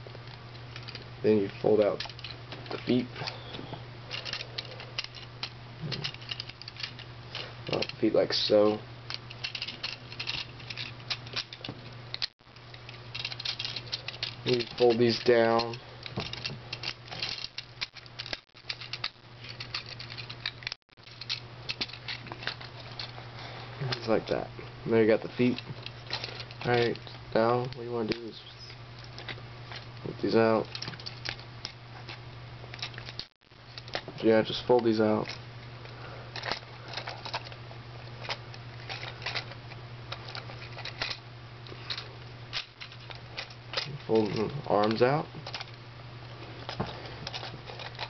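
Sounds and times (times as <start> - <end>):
steady low hum: 0.0 - 48.0
plastic toy parts clicking: 4.1 - 8.0, 8.7 - 23.1, 36.4 - 37.6, 38.2 - 39.6, 40.2 - 41.2, 46.7 - 48.0.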